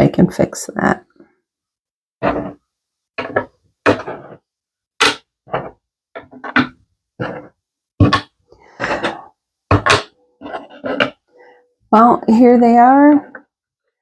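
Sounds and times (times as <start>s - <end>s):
magnets knocking on hard surface: 3.2s - 4.4s, 5.0s - 11.2s.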